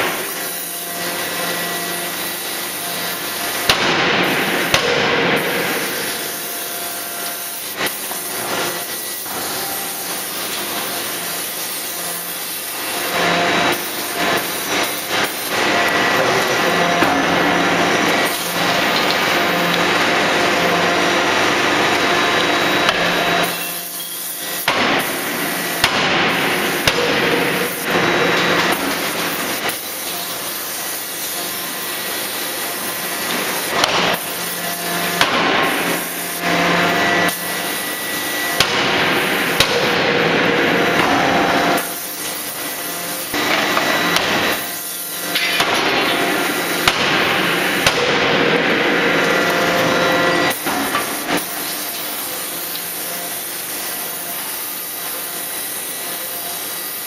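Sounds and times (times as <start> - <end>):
loud machine din: 43.0 - 51.5.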